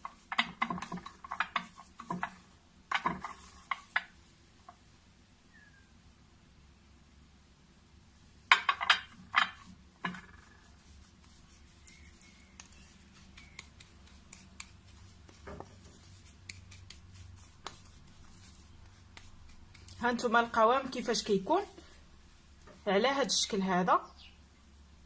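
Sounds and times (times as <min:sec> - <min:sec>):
spoon scraping paste: 0:00.0 - 0:04.0.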